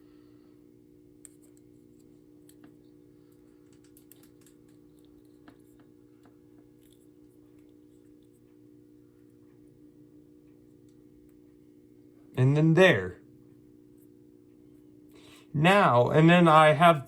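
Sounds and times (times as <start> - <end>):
steady low hum: 0.0 - 17.0
tape crinkling and clicking: 1.2 - 8.4.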